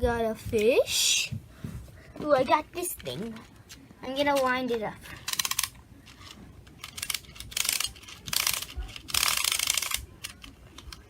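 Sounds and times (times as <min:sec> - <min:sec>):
wind-up toy ratchet clicking: 0:05.3 - 0:05.7, 0:06.8 - 0:10.9.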